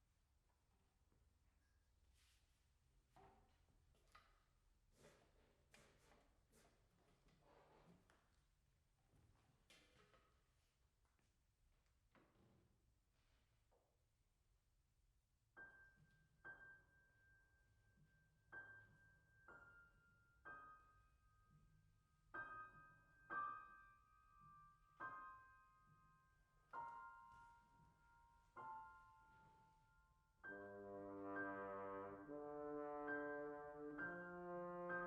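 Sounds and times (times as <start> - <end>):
slow piano notes: 15.6 - 35.0
french horn sustained note: 30.5 - 35.0.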